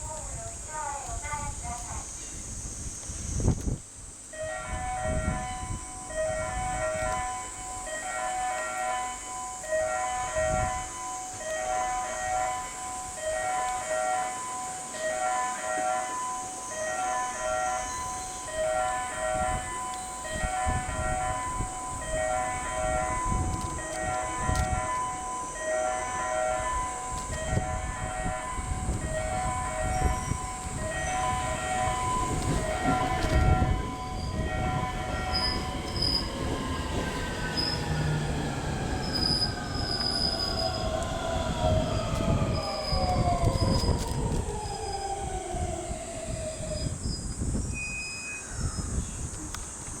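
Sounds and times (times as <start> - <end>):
wheels rumbling on rail: 0.0 - 50.0
electric train motors whining: 4.3 - 50.0
wheel and brake squeals: 29.8 - 44.2, 46.6 - 49.4.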